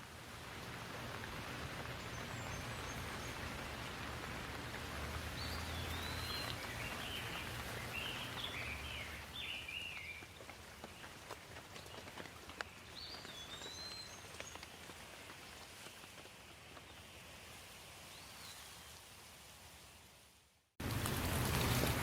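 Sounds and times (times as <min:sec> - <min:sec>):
sharp water drips: 0:00.0 - 0:17.7
steady rain: 0:00.0 - 0:22.0
bird chirping: 0:05.3 - 0:11.1, 0:12.6 - 0:14.8.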